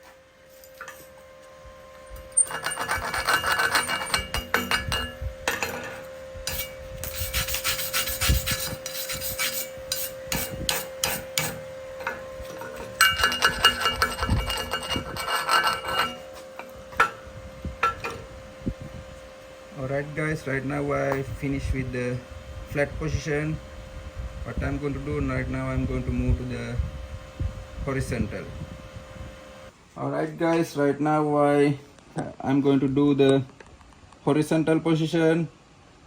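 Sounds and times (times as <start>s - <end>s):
faint hum: 0.0s - 36.0s
wire brush scrubbing metal: 2.0s - 17.2s.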